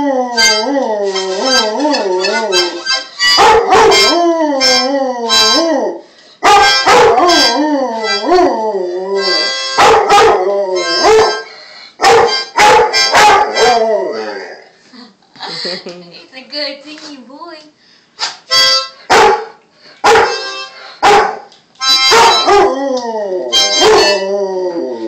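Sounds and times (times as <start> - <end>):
harmonica chords: 0.3 - 14.1, 18.5 - 21.2, 21.8 - 24.5
dog howling: 3.5 - 6.0, 6.9 - 11.4, 13.2 - 14.7, 22.1 - 25.0.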